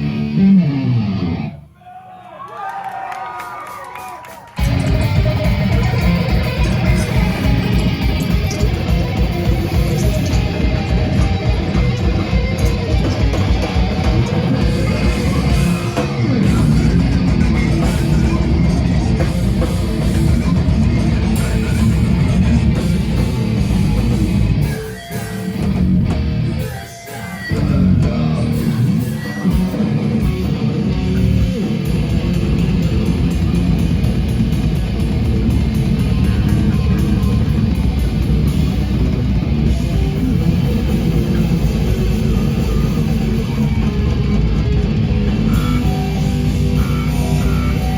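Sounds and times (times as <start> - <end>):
heavy rock band playing live: 0.0 - 1.6, 4.6 - 47.9.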